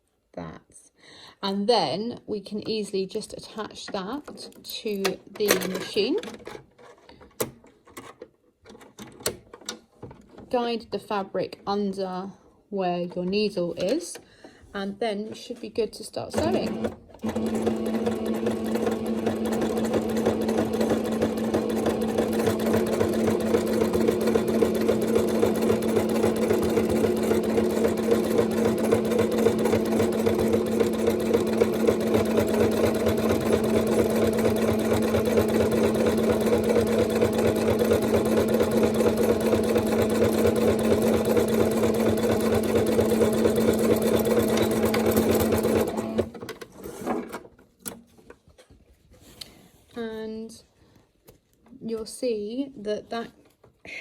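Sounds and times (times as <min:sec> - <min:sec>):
sewing machine running: 0:16.4 - 0:47.0.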